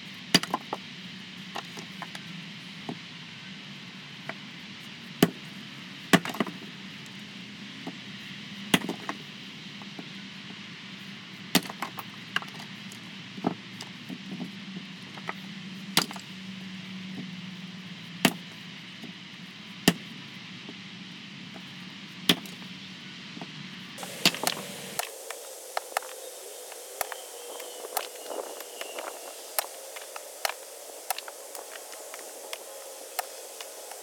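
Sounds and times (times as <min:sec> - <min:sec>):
steady low hum: 0:23.7 - 0:34.0.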